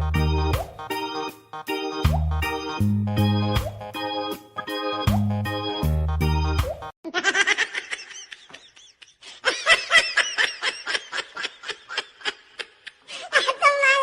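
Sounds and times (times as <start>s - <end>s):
organ music sting: 0.0s - 6.9s
person laughing: 7.0s - 13.8s.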